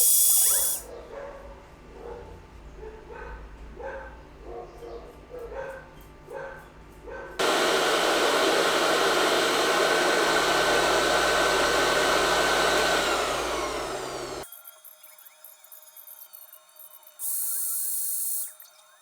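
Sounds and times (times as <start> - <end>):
electric blower motor whining: 7.4 - 14.4.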